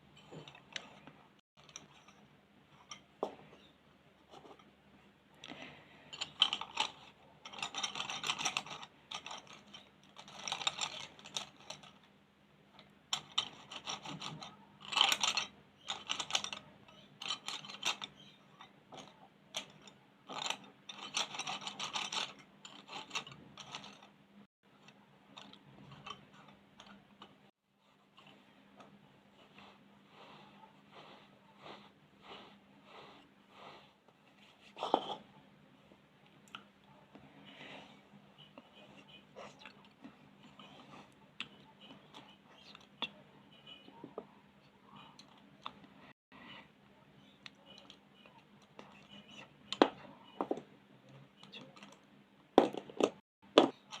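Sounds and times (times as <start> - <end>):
colouring strokes scratching paper: 29.4 - 34.6.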